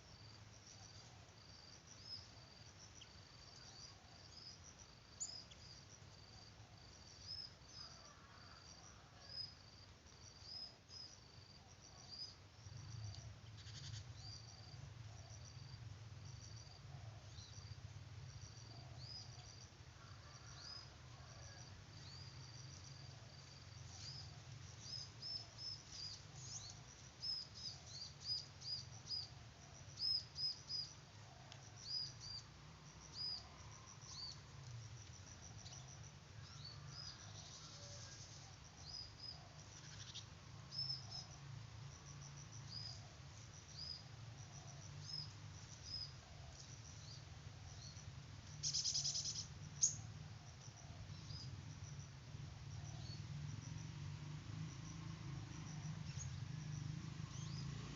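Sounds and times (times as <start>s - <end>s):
small birds chirping: 13.4s - 14.7s, 23.8s - 29.3s, 44.9s - 50.1s, 56.0s - 56.6s, 57.3s - 57.7s.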